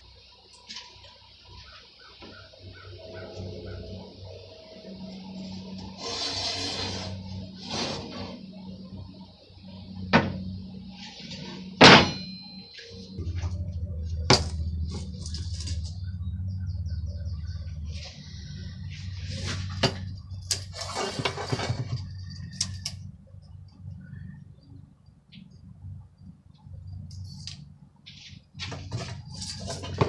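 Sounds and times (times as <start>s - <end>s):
steady low hum: 0.0s - 30.0s
iron tools clanking: 11.0s - 16.0s, 19.3s - 22.9s, 28.7s - 30.0s
ringing metal clang: 11.8s - 13.5s.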